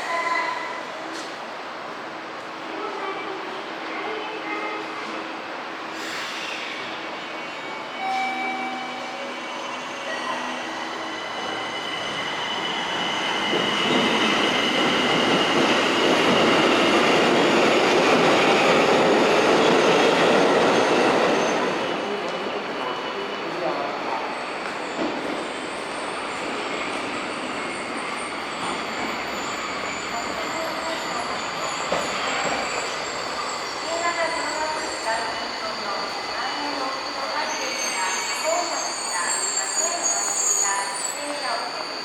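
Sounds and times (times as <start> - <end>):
subway train running: 0.0 - 42.0
high-pitched wheel squeal: 27.6 - 42.0.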